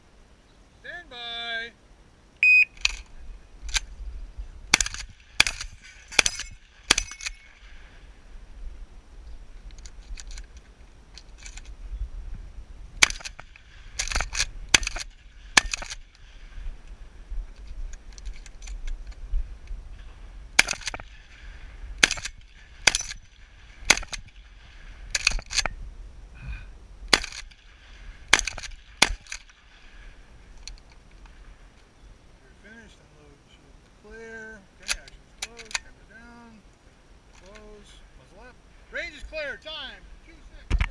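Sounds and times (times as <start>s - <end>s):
shotgun shots: 4.7s - 7.4s, 13.0s - 16.0s, 20.6s - 21.2s, 22.0s - 23.2s, 23.8s - 24.5s, 27.1s - 27.7s, 28.3s - 29.5s.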